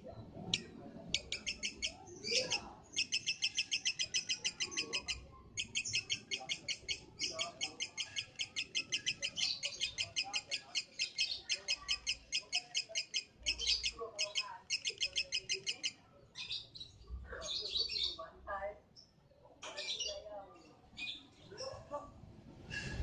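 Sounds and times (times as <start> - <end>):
lovebird chirping trill: 0.5 - 16.6.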